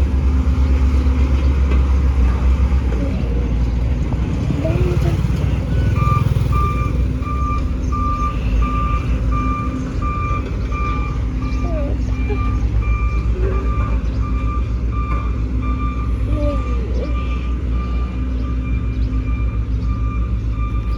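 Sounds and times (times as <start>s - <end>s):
bulldozer diesel engine running: 0.0s - 20.9s
reversing alarm beeping: 5.0s - 20.9s.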